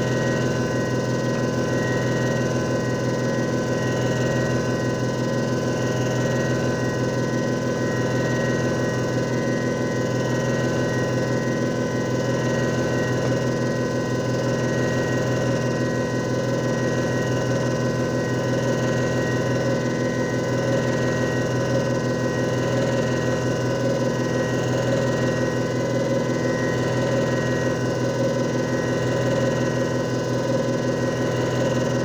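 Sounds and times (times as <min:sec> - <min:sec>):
motor hum: 0:17.6 - 0:32.0.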